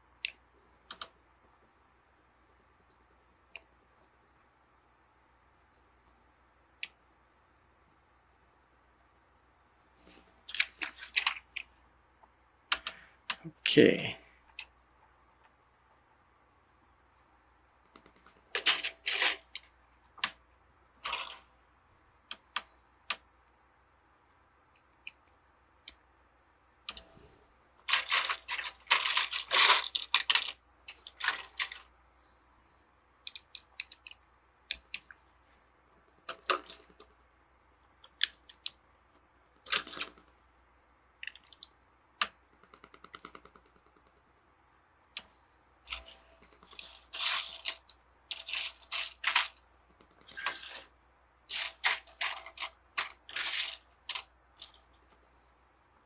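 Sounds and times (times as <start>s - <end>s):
plastic bricks clicking and rattling: 21.0s - 21.4s, 27.9s - 31.9s, 45.9s - 50.9s, 51.5s - 55.1s.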